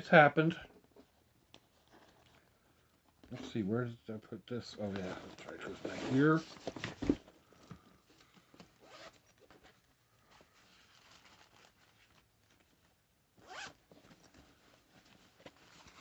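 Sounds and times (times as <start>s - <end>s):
bag zipper: 8.8s - 9.3s, 13.4s - 13.8s
bag rustling and clicks: 13.4s - 16.0s.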